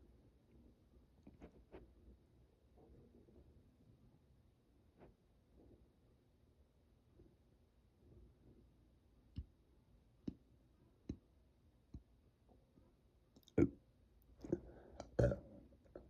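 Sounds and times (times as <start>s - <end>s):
throat clicks and gulps: 13.4s - 13.8s, 14.4s - 16.0s.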